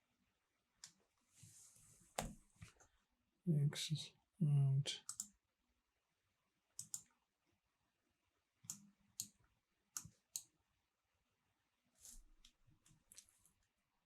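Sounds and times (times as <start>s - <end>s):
computer mouse buttons clicking: 5.0s - 5.3s, 6.8s - 7.1s, 8.7s - 9.4s.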